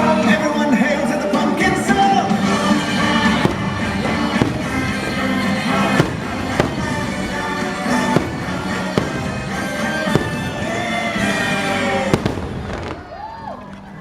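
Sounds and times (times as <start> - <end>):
music soundtrack: 0.0 - 14.0
fireworks bangs: 2.2 - 13.3.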